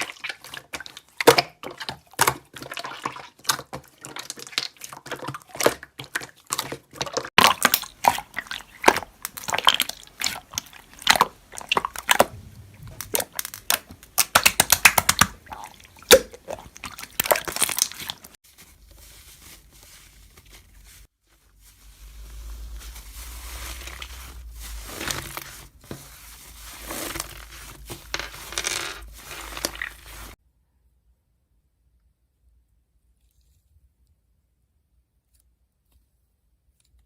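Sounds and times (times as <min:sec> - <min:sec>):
rustling and handling: 0:00.0 - 0:30.4
paper or plastic crinkling: 0:04.1 - 0:30.4.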